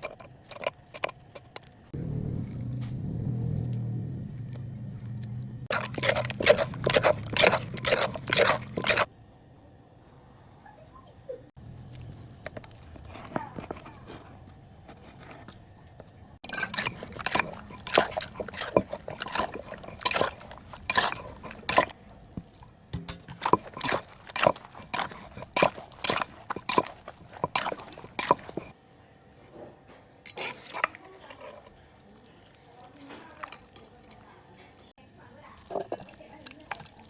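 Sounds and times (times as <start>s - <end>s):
wooden pestle pounding in mortar: 5.7s - 9.1s, 16.4s - 28.7s.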